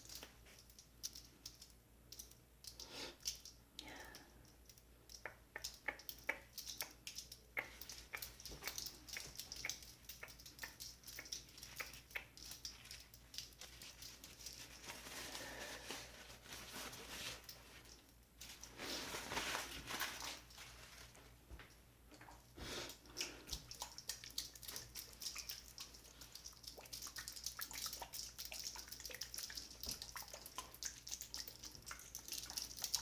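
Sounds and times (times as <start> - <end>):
rustling and crinkling: 7.7 - 21.9.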